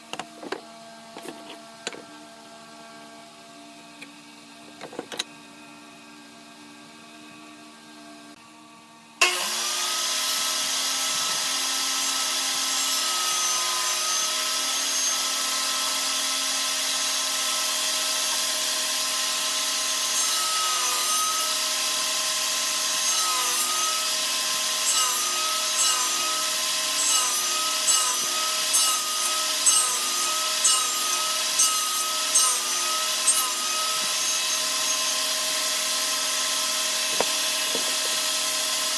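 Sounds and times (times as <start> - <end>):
power tool cutting wood: 9.2 - 38.9
power tool motor whine: 9.2 - 38.9.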